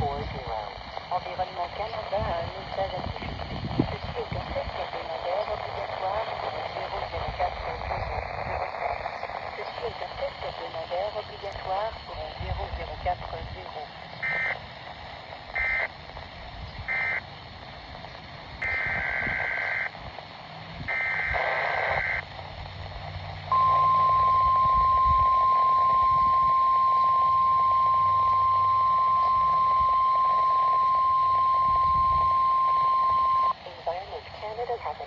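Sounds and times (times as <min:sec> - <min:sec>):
digital data tones: 0:23.5 - 0:33.6.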